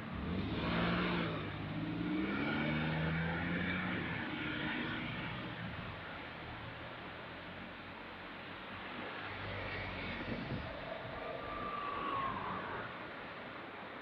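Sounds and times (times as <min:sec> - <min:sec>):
vehicle engine passing by: 0:00.0 - 0:05.4, 0:09.0 - 0:13.6.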